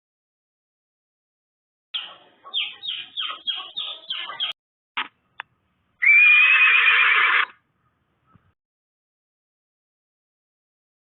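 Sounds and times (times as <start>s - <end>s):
horse whinnying: 6.0s - 7.6s.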